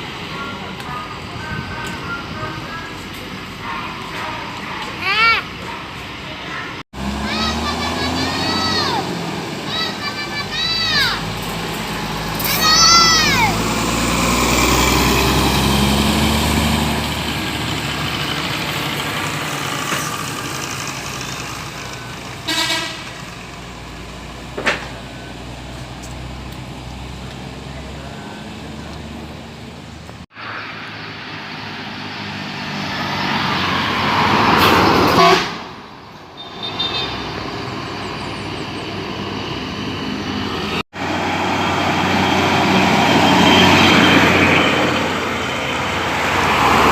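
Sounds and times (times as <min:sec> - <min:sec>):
buses passing: 0:00.0 - 0:46.9
bus horn toots: 0:22.4 - 0:23.2, 0:34.6 - 0:35.7, 0:36.4 - 0:37.3.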